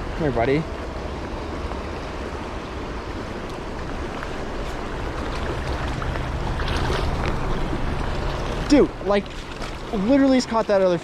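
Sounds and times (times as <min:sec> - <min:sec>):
creek water rushing: 0:00.0 - 0:11.0.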